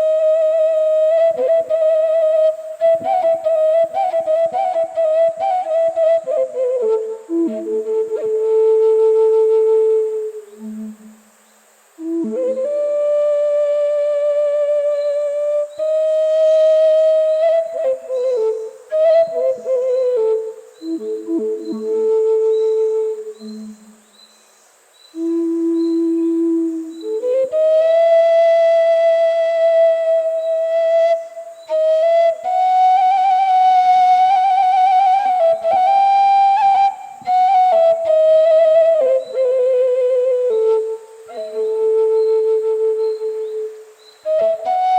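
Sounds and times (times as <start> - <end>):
end-blown flute playing slow lament: 0.0 - 24.0, 25.2 - 44.9.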